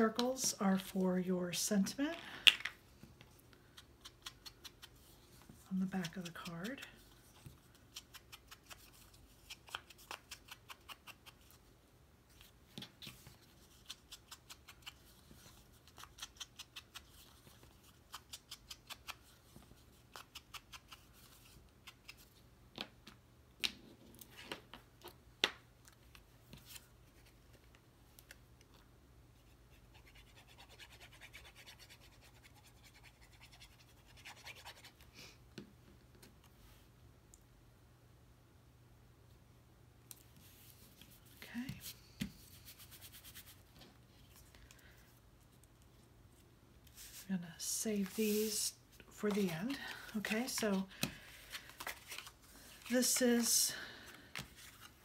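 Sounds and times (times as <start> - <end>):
paper rustling: 48.0 - 53.5.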